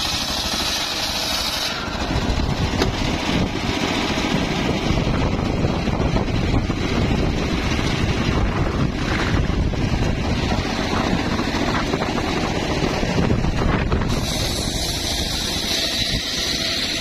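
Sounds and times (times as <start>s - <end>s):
sawmill engine rumbling: 0.0s - 17.0s
spinning saw blade: 0.0s - 17.0s.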